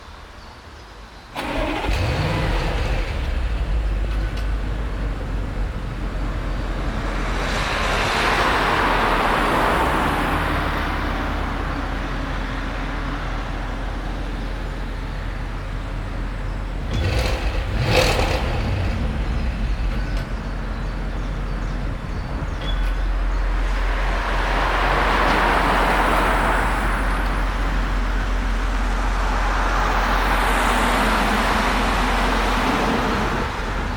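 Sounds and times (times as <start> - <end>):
car engine starting and idling: 1.3 - 33.9
engine rev blip: 16.8 - 20.4.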